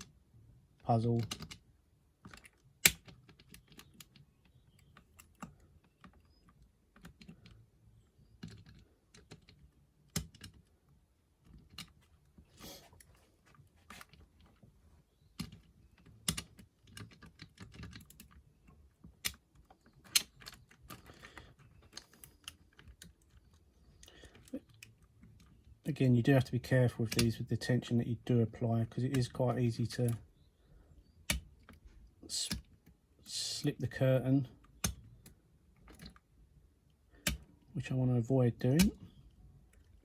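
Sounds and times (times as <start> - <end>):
lock pick clicking in a lock: 2.2 - 7.6, 20.0 - 23.2, 31.3 - 31.8.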